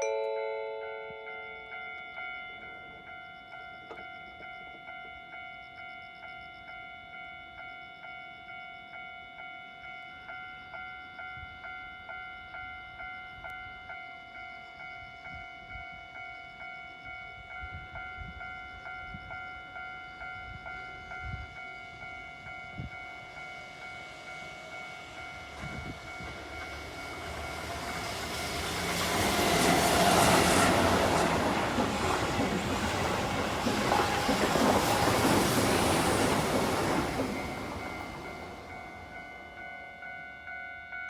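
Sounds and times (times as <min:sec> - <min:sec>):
level-crossing alarm bell clanging: 0:00.0 - 0:41.0
train wheels clattering: 0:25.3 - 0:39.2.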